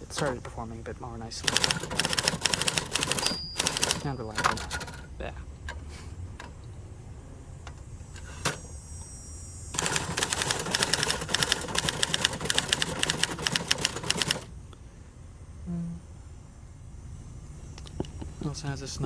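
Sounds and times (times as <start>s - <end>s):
manual typewriter typing: 0.0s - 0.7s, 1.3s - 5.8s, 9.8s - 14.5s.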